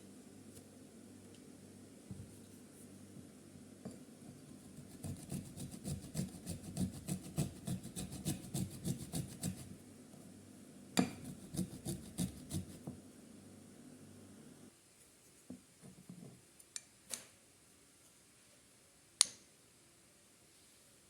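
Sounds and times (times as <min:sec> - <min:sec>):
ginger rasping on grater: 0:04.7 - 0:09.7, 0:11.2 - 0:12.8.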